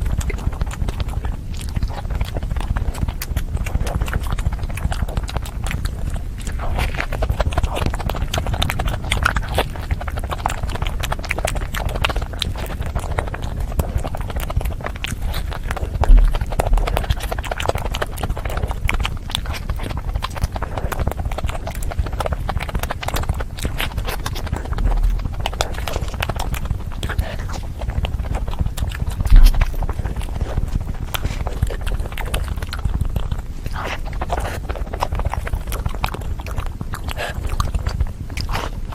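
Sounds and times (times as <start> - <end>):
wet chewing and mouth smacking: 0.0 - 38.9
low thumps: 16.0 - 17.3, 29.1 - 31.4.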